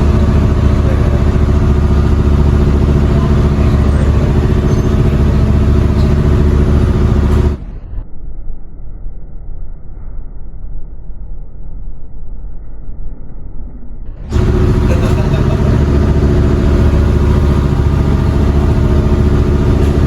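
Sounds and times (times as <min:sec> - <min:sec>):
boat engine humming: 0:00.0 - 0:07.8, 0:14.2 - 0:20.0.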